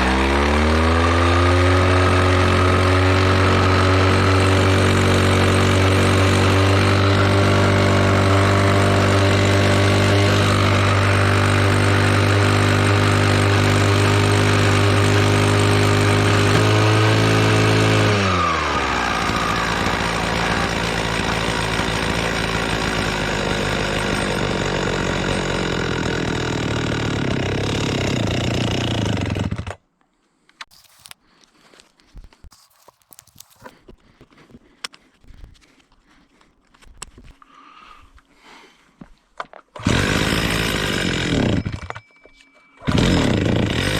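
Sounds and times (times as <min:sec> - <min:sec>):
brushcutter engine running: 0:00.0 - 0:29.8, 0:39.8 - 0:42.0, 0:42.8 - 0:43.9.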